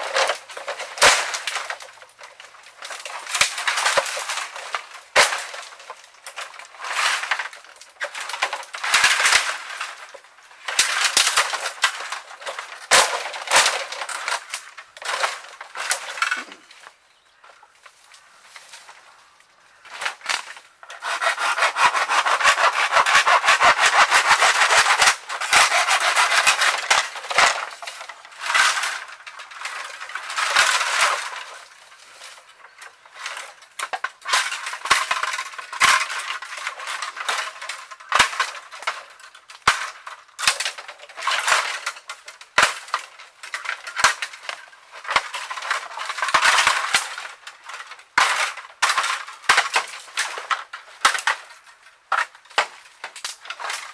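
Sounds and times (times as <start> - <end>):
bamboo cracks and clicks: 0.0 - 19.0, 19.8 - 53.9
dry bamboo being cut: 20.1 - 32.4.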